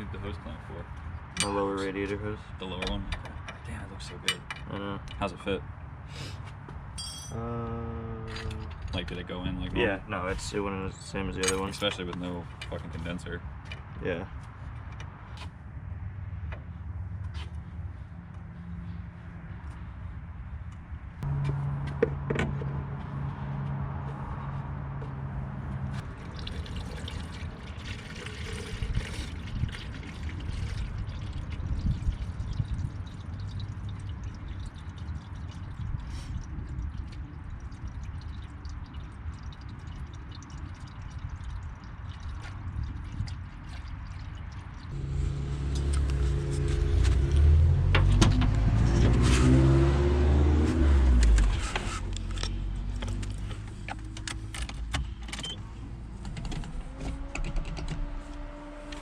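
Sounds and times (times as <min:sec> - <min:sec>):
steady low rumble: 0:44.8 - 0:49.0
car engine revving: 0:44.9 - 0:52.1.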